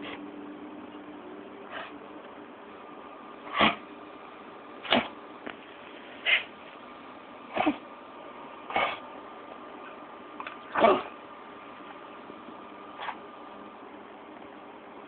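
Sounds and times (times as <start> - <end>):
dog coughing: 3.5 - 3.8, 7.5 - 7.9, 8.7 - 9.0, 10.7 - 11.2.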